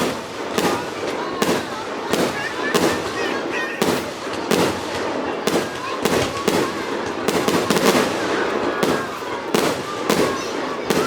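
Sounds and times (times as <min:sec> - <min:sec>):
fireworks bursting: 0:00.0 - 0:11.0.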